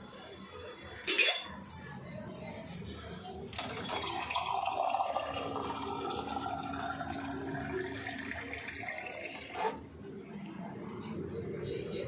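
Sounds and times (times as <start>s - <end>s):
water pouring into container: 3.6s - 9.8s.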